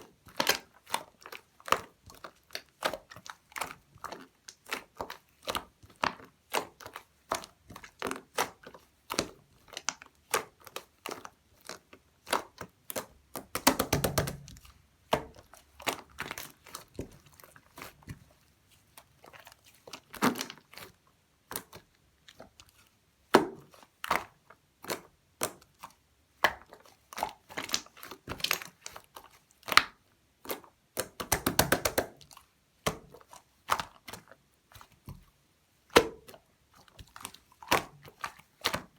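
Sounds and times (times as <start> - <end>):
slime clicking and popping: 12.2 - 15.4, 30.5 - 32.2.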